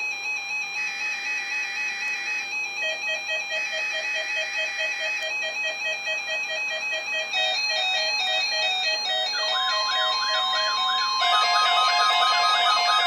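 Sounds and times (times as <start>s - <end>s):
two-pitch electronic alarm tones: 7.4s - 13.0s.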